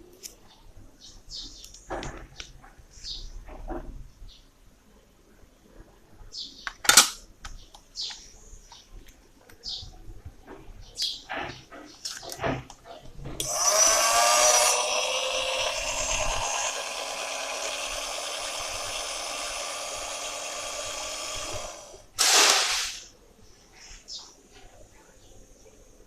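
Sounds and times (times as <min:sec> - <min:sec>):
small electric motor whining: 0:13.4 - 0:22.0
burst of hissing noise: 0:22.2 - 0:23.1.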